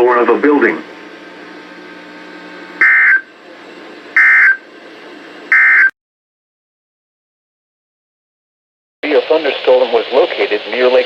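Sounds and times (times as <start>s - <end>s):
faint radio hiss and hum: 0.0s - 2.8s, 9.0s - 11.0s.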